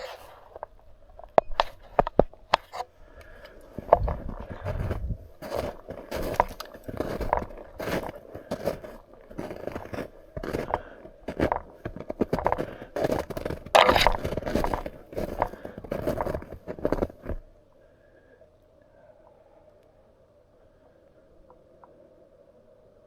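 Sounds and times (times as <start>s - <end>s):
crunching and scraping: 0.0s - 17.5s.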